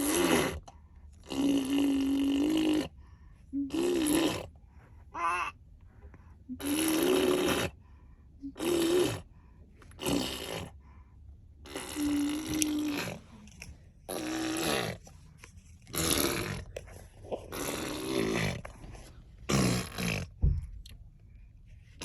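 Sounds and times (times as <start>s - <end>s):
child making engine sounds: 3.5s - 4.4s, 5.1s - 5.6s, 11.7s - 13.3s.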